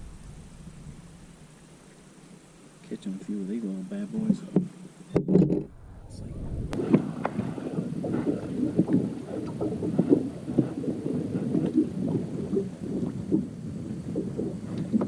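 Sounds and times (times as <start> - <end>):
small waves lapping against hull: 6.7 - 15.0.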